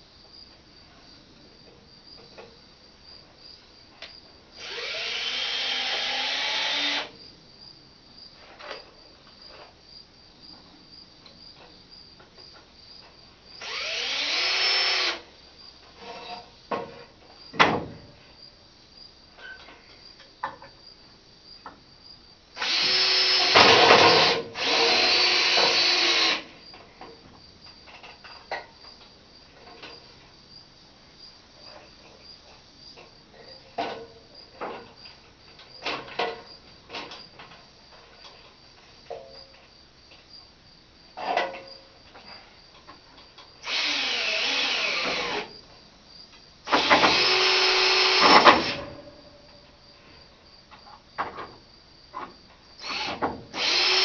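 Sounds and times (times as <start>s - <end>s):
power drill running: 4.6s - 7.1s, 13.6s - 15.2s, 22.6s - 26.5s, 43.6s - 45.5s, 46.7s - 48.8s, 52.8s - 54.0s.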